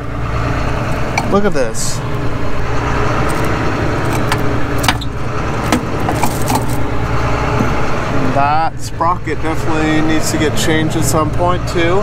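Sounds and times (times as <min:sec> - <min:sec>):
diesel engine idling: 0:00.0 - 0:12.0
metallic clinks and rattles: 0:06.0 - 0:06.8.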